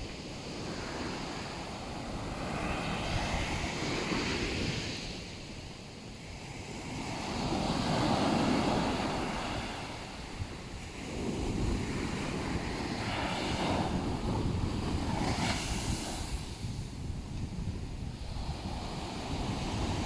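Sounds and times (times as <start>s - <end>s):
ocean waves breaking on beach: 0.0s - 20.0s
hiss of wave wash: 15.2s - 17.0s.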